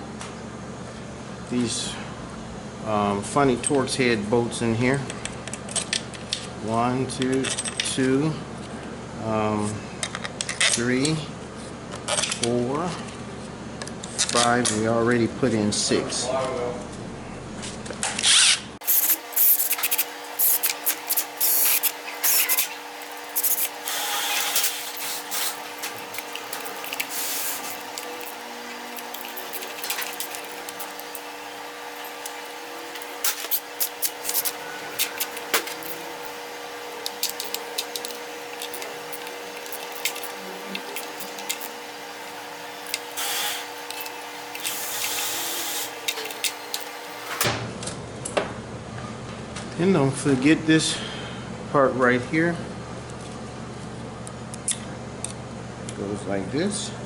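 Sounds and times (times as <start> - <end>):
hand tools clicking on metal: 18.8 - 41.8, 42.8 - 47.4.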